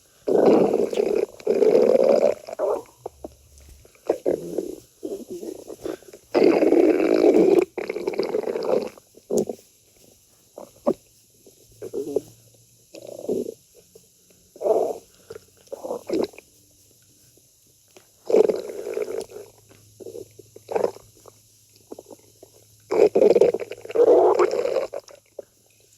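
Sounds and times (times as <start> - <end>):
stomach growling and gurgling: 0.2 - 9.6, 11.8 - 13.7, 14.6 - 16.4, 18.2 - 25.6.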